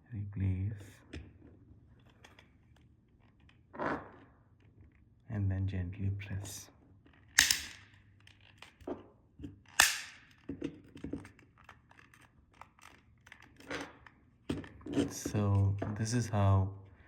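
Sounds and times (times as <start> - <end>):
plastic case snapping: 7.4 - 7.9, 9.8 - 10.4.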